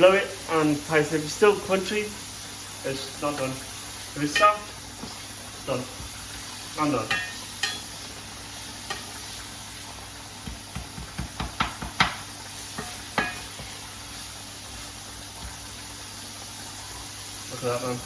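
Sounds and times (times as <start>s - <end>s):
meat sizzling in a pan: 0.0s - 18.0s
utensil scraping a pan: 12.0s - 13.9s.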